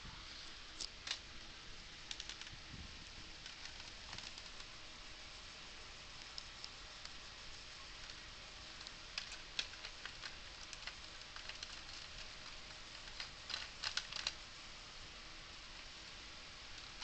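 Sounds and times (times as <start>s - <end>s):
faint hiss: 0.0s - 17.0s.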